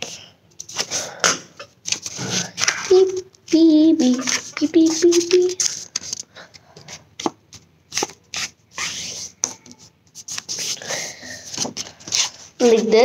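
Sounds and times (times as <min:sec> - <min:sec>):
paper being folded and creased: 0:01.8 - 0:06.3, 0:07.9 - 0:13.0.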